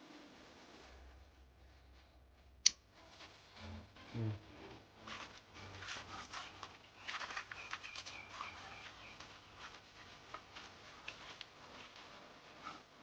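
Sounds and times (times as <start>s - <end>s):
rustling plant leaves: 5.8s - 12.6s.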